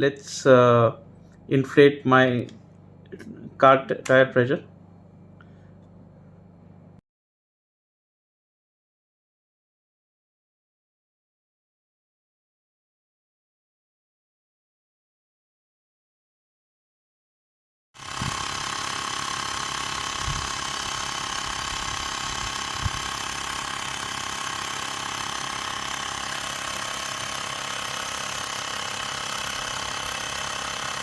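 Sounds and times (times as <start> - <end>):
air compressor rattling and whining: 18.0 - 31.0.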